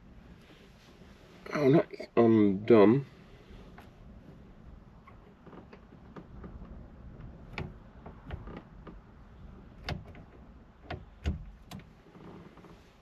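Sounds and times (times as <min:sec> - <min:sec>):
steering wheel knob clicks and knocks: 0:05.0 - 0:12.7.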